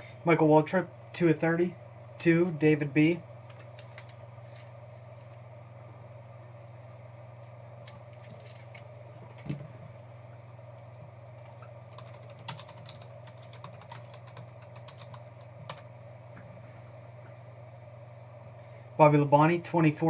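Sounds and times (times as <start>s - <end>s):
low electrical hum: 0.0s - 20.0s
typing on computer keyboard: 3.5s - 4.1s, 11.4s - 15.9s.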